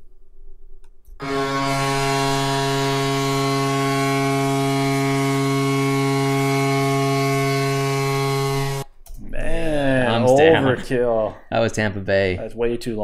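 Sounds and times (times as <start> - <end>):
arena goal horn blast: 1.2 - 8.9.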